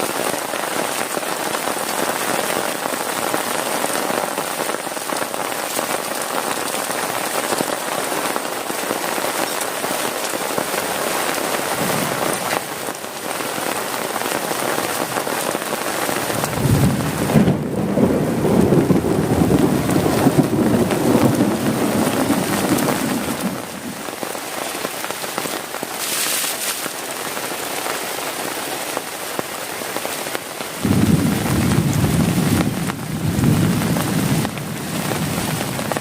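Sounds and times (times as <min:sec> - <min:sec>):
heavy rain on a tent: 0:00.0 - 0:36.0
low rumble of thunder: 0:16.2 - 0:24.1, 0:30.8 - 0:36.0.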